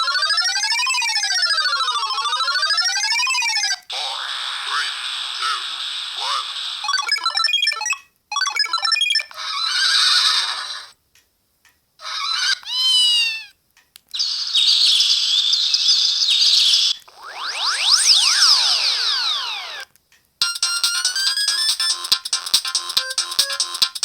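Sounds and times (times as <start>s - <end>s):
rising and falling chirps: 14.2s - 19.8s.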